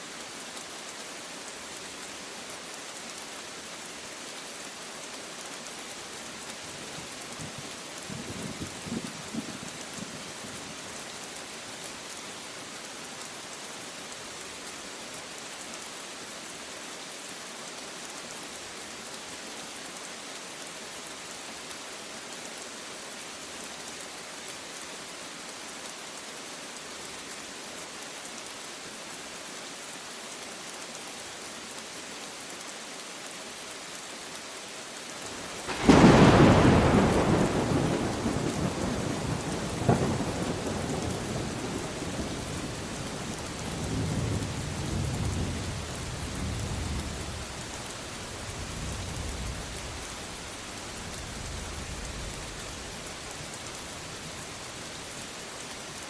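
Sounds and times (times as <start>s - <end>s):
steady rain falling: 0.0s - 56.0s
low rumble of thunder: 35.6s - 47.8s.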